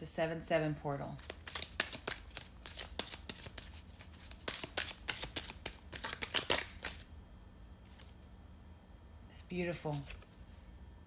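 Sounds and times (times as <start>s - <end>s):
cards being shuffled: 1.2s - 7.1s.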